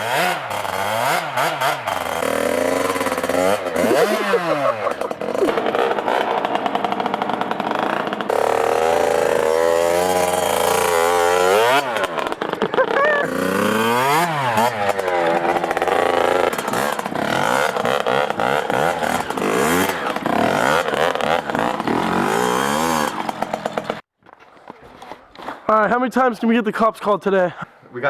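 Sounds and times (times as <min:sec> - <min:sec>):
pit bike engine revving: 0:00.0 - 0:24.0.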